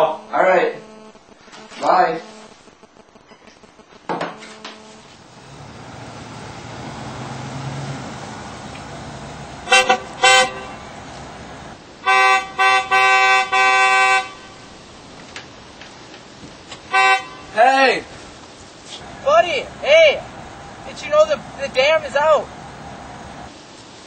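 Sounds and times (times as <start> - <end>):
car engine running: 5.2 - 11.8, 19.0 - 23.5
car horn honking: 8.8 - 14.7, 16.9 - 17.6, 19.0 - 23.5.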